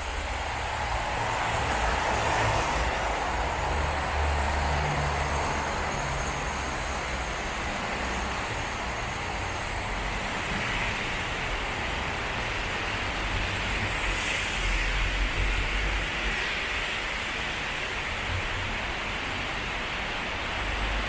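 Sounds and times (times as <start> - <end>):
passing vehicles rumbling: 0.0 - 16.3
tyres hissing on wet road: 0.0 - 21.0.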